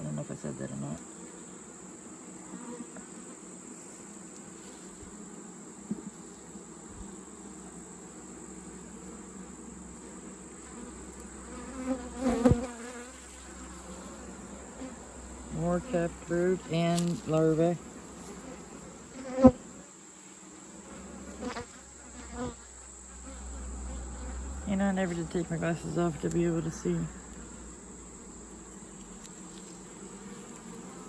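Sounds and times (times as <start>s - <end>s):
honey bees buzzing: 0.0s - 31.0s
loud wavering buzz passing close: 20.8s - 31.0s.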